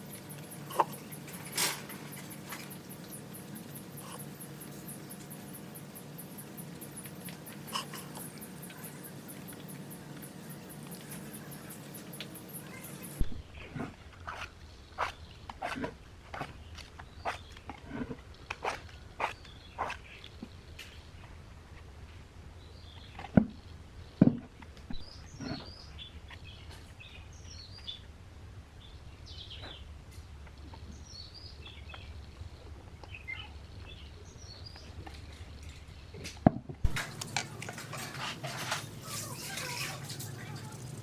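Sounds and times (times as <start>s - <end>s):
small birds chirping: 0.0s - 13.2s, 36.9s - 41.0s
steady low hum: 0.0s - 13.6s
busy background noise: 36.9s - 41.0s.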